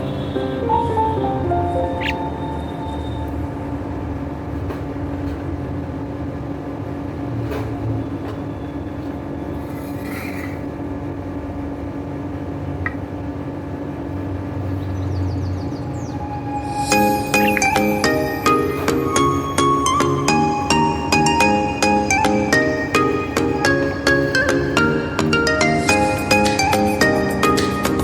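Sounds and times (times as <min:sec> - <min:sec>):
faint higher sounds: 0:00.0 - 0:04.6, 0:15.8 - 0:27.5.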